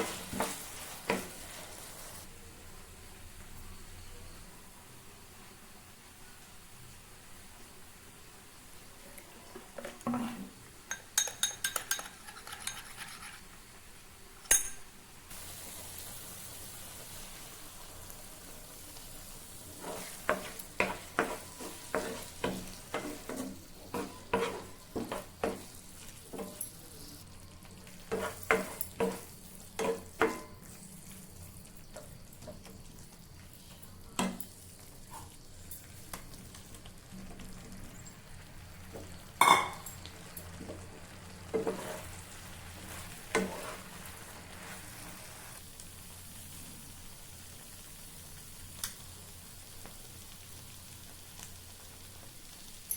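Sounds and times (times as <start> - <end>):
spatula scraping a pan: 0.0 - 2.3, 9.6 - 10.6, 11.7 - 13.7, 19.7 - 26.6, 27.9 - 31.2, 41.5 - 45.6
food sizzling in hot oil: 0.0 - 52.9
utensils clinking: 10.9 - 13.5, 39.4 - 40.1.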